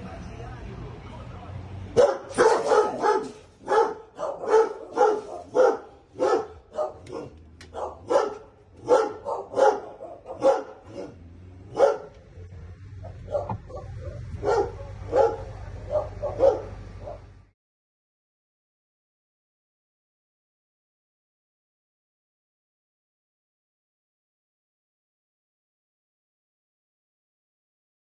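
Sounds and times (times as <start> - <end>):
dog barking: 2.0 - 12.2, 13.0 - 17.3.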